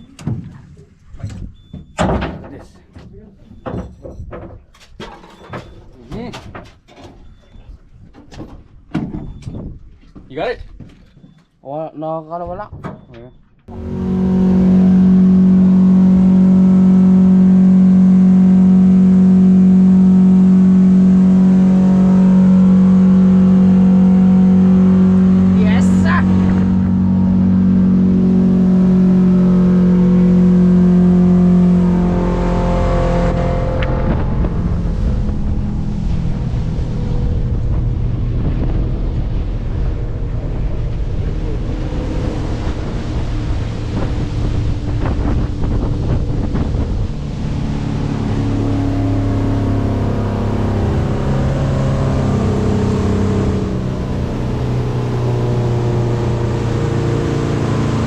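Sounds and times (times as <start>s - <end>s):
motorboat engine running: 13.6s - 58.0s.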